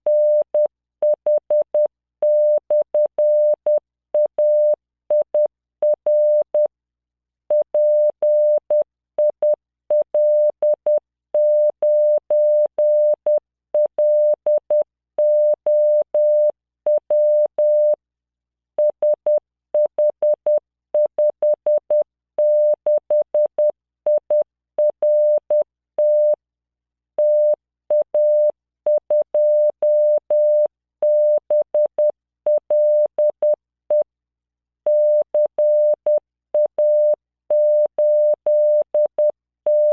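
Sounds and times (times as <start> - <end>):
morse code beeps: 27.2 - 34.0, 34.9 - 39.9.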